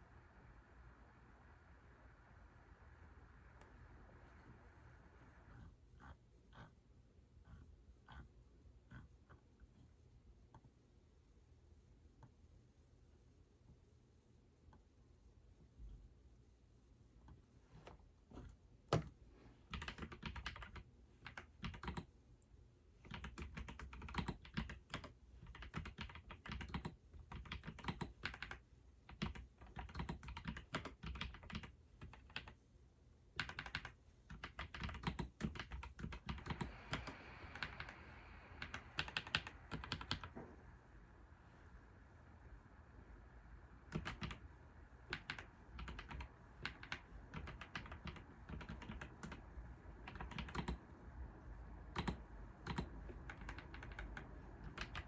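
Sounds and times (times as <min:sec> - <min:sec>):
computer keyboard typing: 0:19.7 - 0:22.1, 0:23.0 - 0:32.6, 0:33.4 - 0:40.4, 0:43.9 - 0:51.0, 0:51.9 - 0:55.0.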